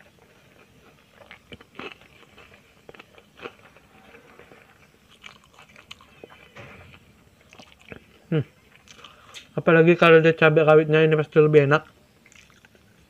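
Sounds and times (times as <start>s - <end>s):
chewing and crunching food: 0.0s - 6.5s, 7.4s - 9.6s, 11.8s - 13.0s.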